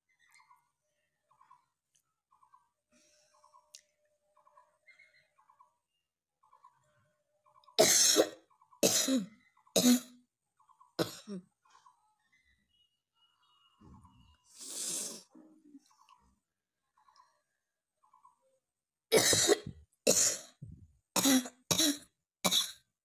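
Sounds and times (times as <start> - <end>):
person coughing: 7.8 - 10.1, 19.1 - 20.6, 21.2 - 22.8.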